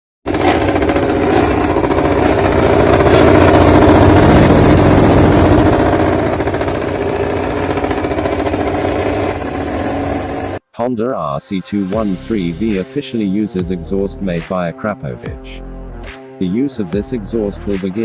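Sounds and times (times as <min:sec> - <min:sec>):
motorcycle engine running: 0:00.3 - 0:10.6.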